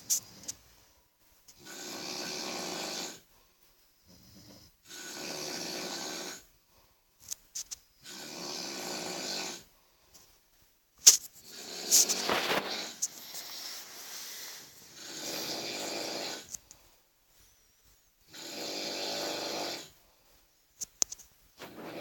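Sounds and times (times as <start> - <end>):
person snoring: 1.6 - 3.2, 4.3 - 6.4, 8.0 - 9.7, 11.4 - 16.5, 18.3 - 20.0.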